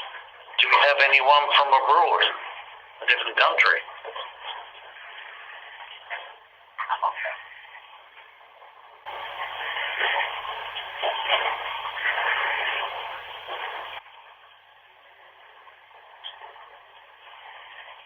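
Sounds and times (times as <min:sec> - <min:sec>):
running bathwater hiss: 0:09.1 - 0:14.0.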